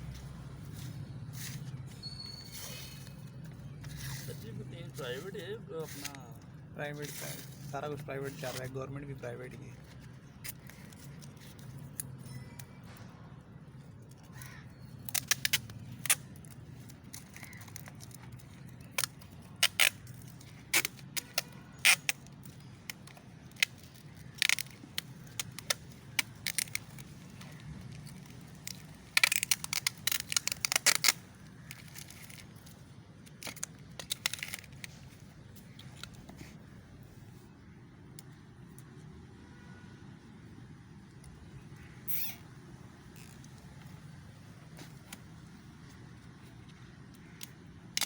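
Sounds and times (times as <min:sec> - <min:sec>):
small hard objects clicking: 0:13.9 - 0:36.4.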